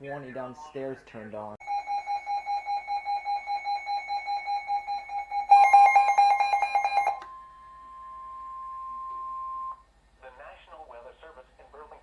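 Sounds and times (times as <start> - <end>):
fast chirping alarm: 1.6 - 9.8
steady warning tone: 1.6 - 9.8.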